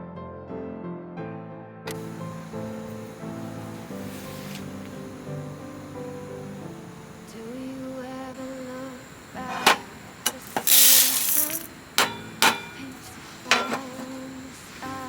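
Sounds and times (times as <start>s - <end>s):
soft background music: 1.9s - 10.8s.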